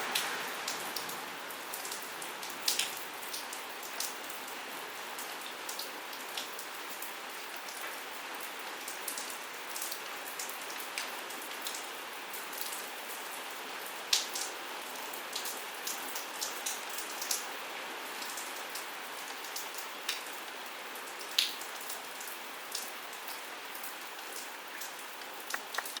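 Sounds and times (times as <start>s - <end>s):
raindrops ticking on a surface: 0.0s - 26.0s
steady rain hiss: 0.0s - 26.0s.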